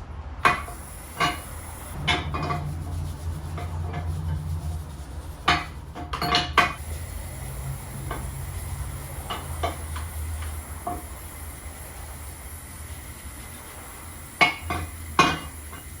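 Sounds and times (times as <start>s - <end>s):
steady low hum: 0.0s - 16.0s
metal parts clanking: 5.5s - 6.8s.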